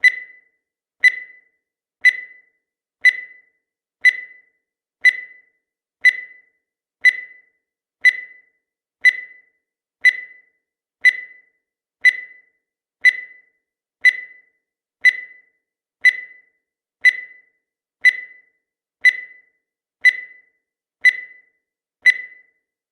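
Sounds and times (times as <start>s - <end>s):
short high beeps: 22.1s - 22.5s.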